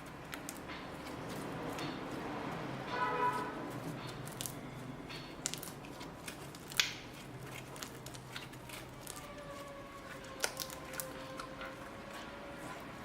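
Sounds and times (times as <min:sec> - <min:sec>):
sticky slime clicks and crackles: 0:05.2 - 0:09.5, 0:10.1 - 0:11.7.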